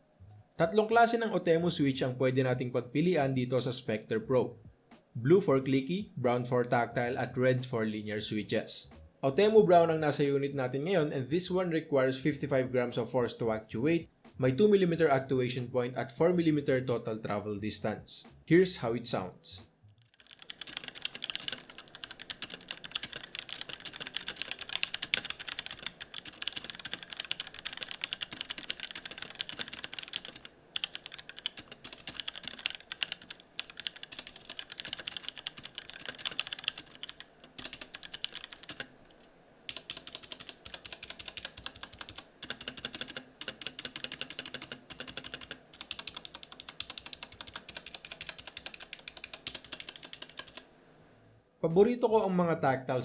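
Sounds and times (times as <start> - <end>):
fast mechanical keyboard typing: 20.0 - 50.6.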